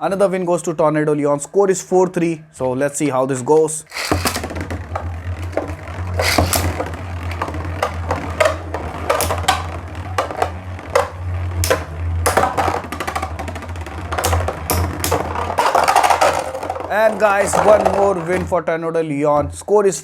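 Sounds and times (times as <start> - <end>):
spinning tops clashing: 3.9 - 18.3
steady low hum: 3.9 - 18.5.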